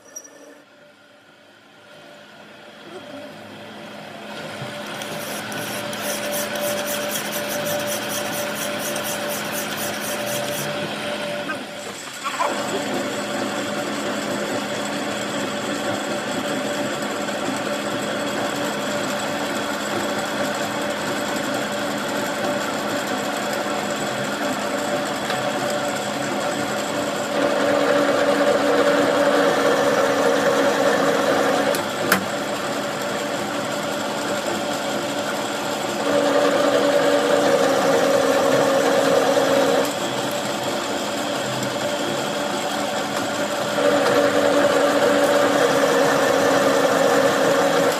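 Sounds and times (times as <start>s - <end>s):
machine motor humming: 4.4s - 13.3s.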